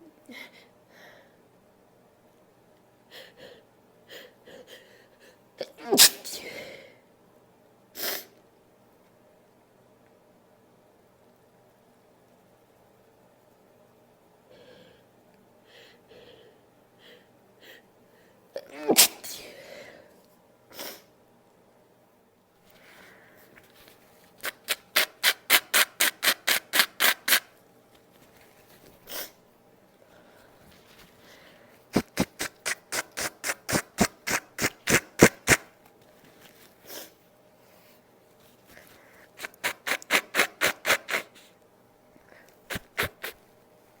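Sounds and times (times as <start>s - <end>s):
quick rubbing strokes: 24.4s - 27.5s, 31.9s - 35.7s, 39.2s - 41.5s, 42.7s - 43.4s.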